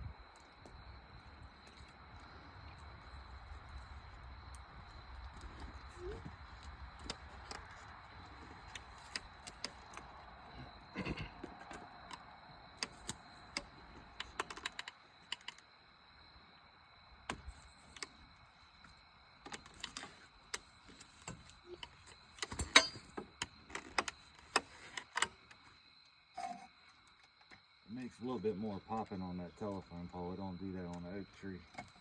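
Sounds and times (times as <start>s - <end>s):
climbing gear clicking and knocking: 11.4s - 15.6s, 19.4s - 25.6s.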